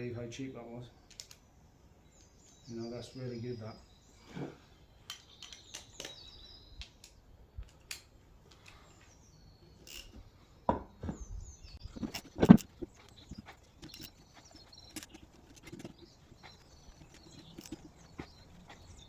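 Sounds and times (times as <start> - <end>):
birds chirping: 0.0 - 19.0
metal tools clinking on metal parts: 9.7 - 10.2, 11.8 - 19.0.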